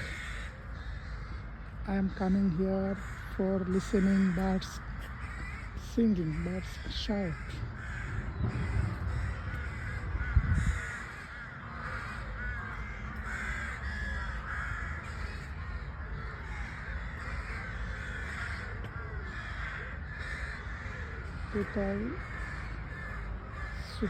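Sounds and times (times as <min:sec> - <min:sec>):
chorus of birds calling: 0:00.0 - 0:24.0
low rumble with thump: 0:07.5 - 0:11.3.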